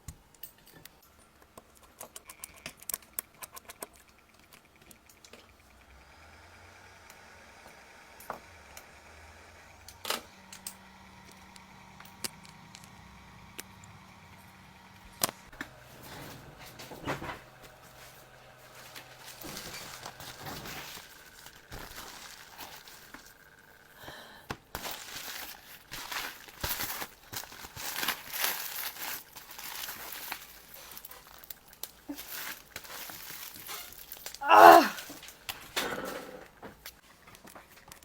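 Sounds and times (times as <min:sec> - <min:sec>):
small tools clicking and tapping: 0:00.0 - 0:05.8
scraping and rustling: 0:15.6 - 0:23.7, 0:24.8 - 0:35.7.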